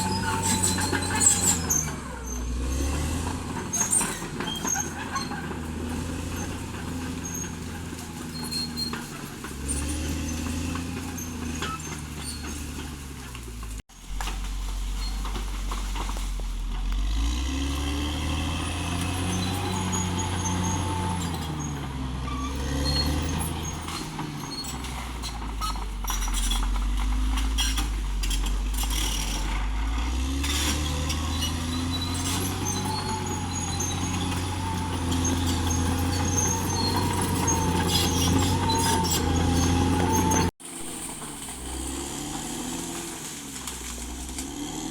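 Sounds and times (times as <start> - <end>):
bulldozer diesel engine under load: 0.0 - 44.9.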